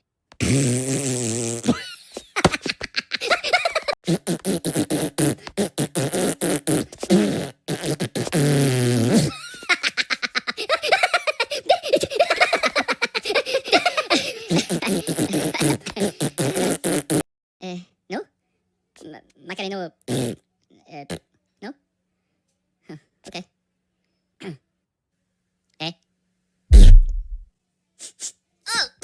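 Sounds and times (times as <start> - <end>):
cartoon fart sound effects: 0.4 - 2.6, 4.0 - 9.3, 13.8 - 17.2, 20.1 - 20.4, 26.7 - 27.4.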